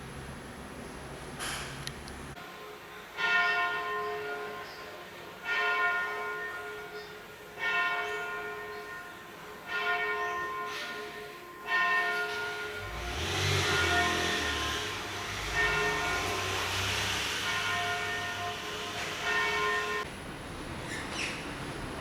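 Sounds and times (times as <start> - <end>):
bell tolling: 9.7 - 20.1.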